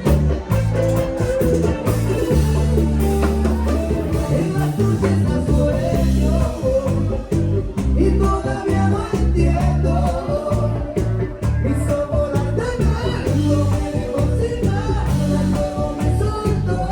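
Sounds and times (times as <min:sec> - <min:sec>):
latin band music with singing: 0:00.0 - 0:16.9.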